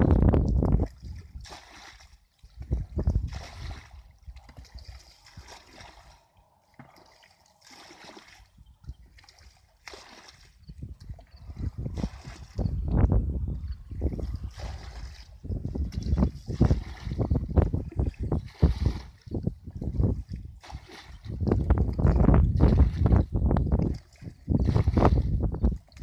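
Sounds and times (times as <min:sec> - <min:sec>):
low rumbles on microphone: 0:00.0 - 0:01.3, 0:02.6 - 0:03.8, 0:10.6 - 0:20.6, 0:21.2 - 0:26.0
water splashing and sloshing: 0:00.0 - 0:26.0.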